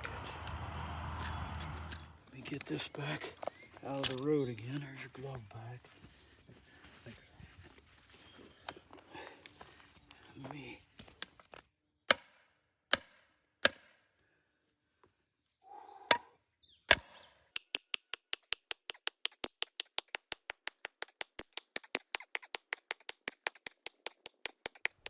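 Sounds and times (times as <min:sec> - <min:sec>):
fast run of sharp clicks: 0:17.6 - 0:25.0.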